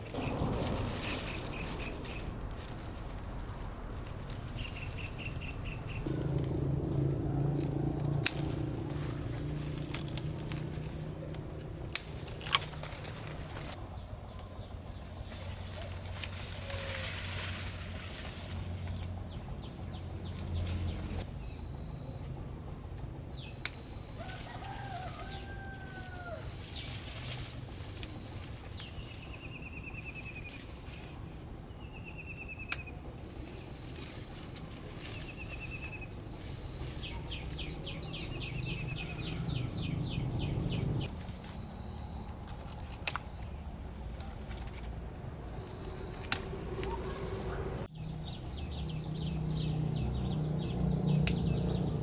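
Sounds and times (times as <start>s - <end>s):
high-pitched insect whine: 0.0s - 52.0s
trilled bird calls: 35.2s - 41.1s.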